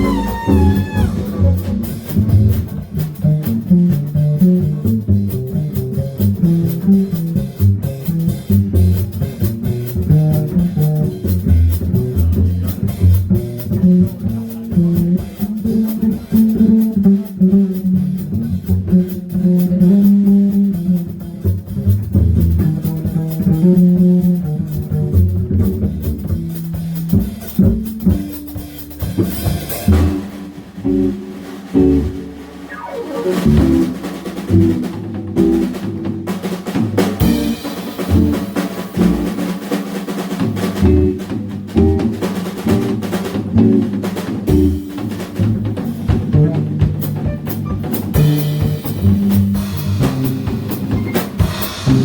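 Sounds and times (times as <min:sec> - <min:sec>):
guitar: 0:00.0 - 0:14.9, 0:27.0 - 0:39.6, 0:40.5 - 0:52.0
bass: 0:00.0 - 0:52.0
jazz combo playing swing: 0:00.0 - 0:52.0.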